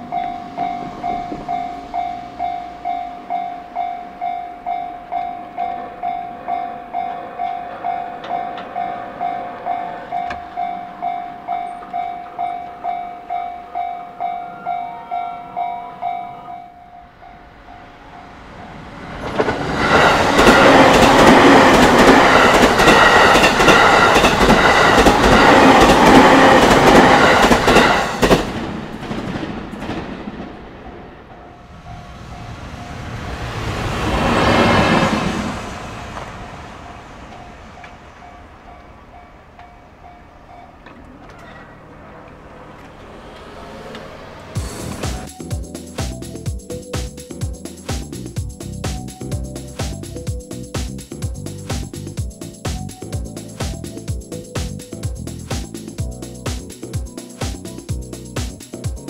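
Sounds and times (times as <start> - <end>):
level-crossing warning bell: 0.0 - 28.4, 30.9 - 33.5, 36.4 - 42.8, 44.6 - 56.2
train wheels clattering over rails: 17.7 - 45.4.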